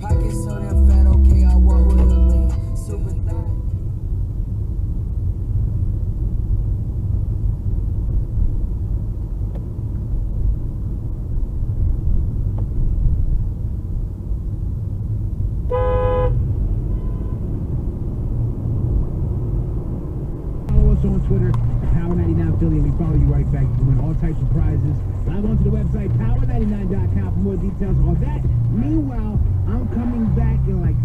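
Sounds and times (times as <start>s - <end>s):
car driving on road rumble: 0.0s - 31.0s
car horn honk: 15.7s - 17.5s.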